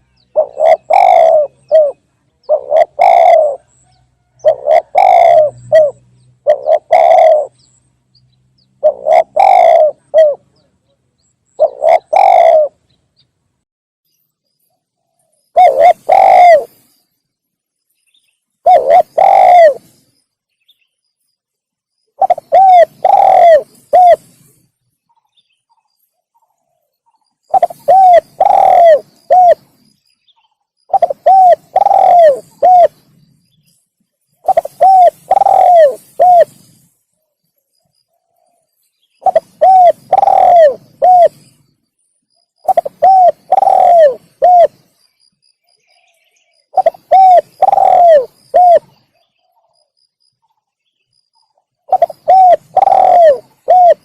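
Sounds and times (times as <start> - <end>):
dove cooing: 0.0 - 7.6, 8.8 - 10.6, 11.6 - 12.8, 15.0 - 16.8, 18.6 - 20.0, 22.2 - 24.6, 27.5 - 29.8, 30.9 - 33.1, 34.4 - 36.9, 39.2 - 41.6, 42.6 - 44.9, 46.0 - 49.8, 51.8 - 54.0.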